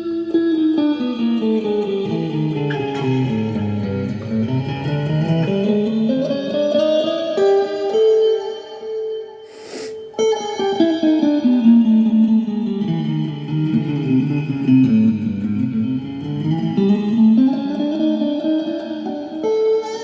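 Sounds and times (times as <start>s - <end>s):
guitar single notes: 0.0s - 20.0s
short scratchy noise: 9.5s - 10.0s.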